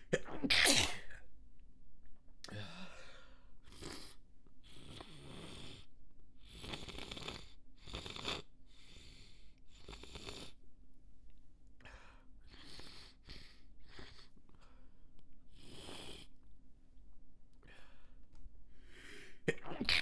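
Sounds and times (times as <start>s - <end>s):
person breathing noisily: 18.8s - 19.4s.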